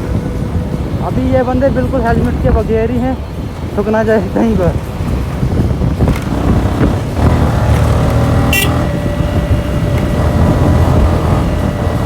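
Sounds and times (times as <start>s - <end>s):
motorcycle engine running: 4.3s - 12.0s
short high beep: 8.5s - 8.8s.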